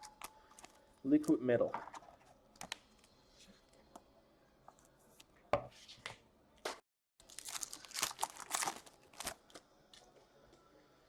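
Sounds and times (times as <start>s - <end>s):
foil wrapper ripping: 7.2s - 9.5s
wrapper and cards crinkling: 7.2s - 9.6s.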